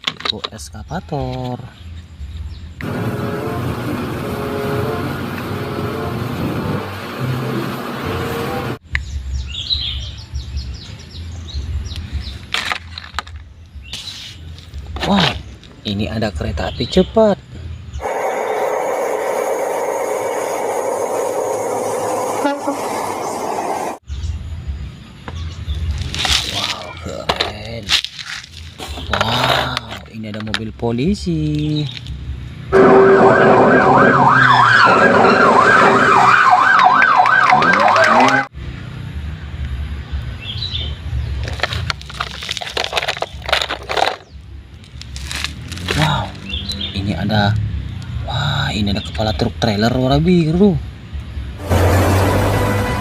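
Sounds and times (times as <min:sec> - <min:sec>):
rustling and crunching: 0:12.3 - 0:15.8, 0:25.8 - 0:30.6, 0:41.3 - 0:46.7.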